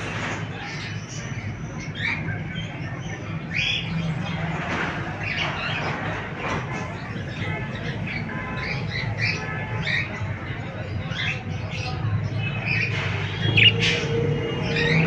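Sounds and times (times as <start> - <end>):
parrots squawking and chirping: 11.2 - 15.0.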